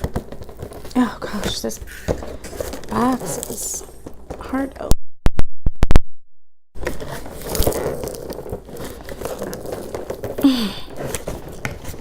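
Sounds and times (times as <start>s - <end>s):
tape and cardboard tearing: 6.8s - 12.0s.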